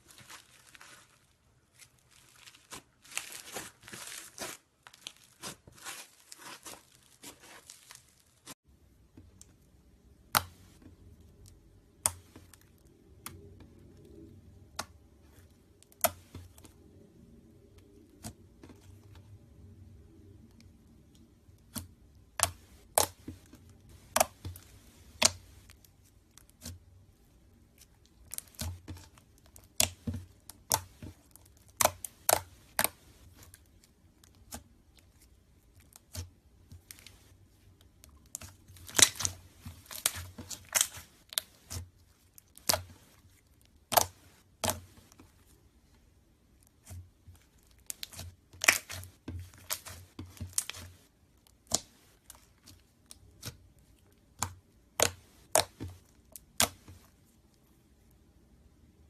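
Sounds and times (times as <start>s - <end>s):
slime popping and crackling: 28.0s - 33.5s, 37.9s - 41.8s, 42.4s - 42.9s, 47.6s - 53.7s, 54.3s - 57.1s.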